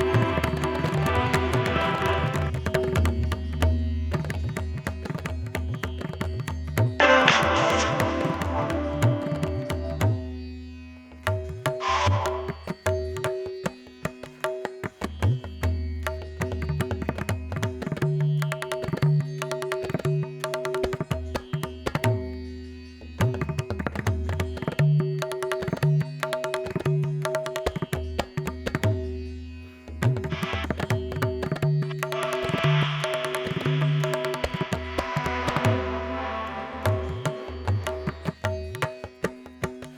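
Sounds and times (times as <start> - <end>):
tabla-like percussion: 0.0 - 39.9
sustained drone tones: 32.1 - 38.3.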